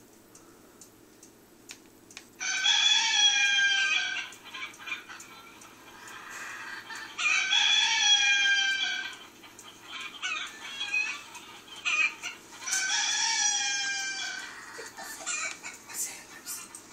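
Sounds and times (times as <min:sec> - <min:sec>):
rooster crowing: 0:02.4 - 0:04.4, 0:06.1 - 0:09.2, 0:09.8 - 0:15.6.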